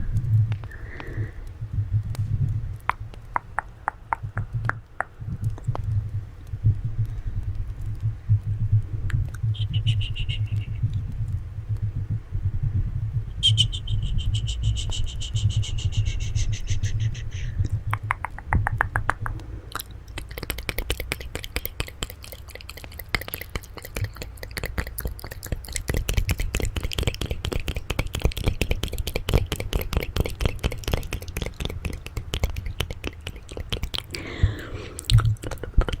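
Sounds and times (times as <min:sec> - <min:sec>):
low rumble: 0:05.3 - 0:20.1
wet tongue clicks and smacks: 0:17.6 - 0:36.0.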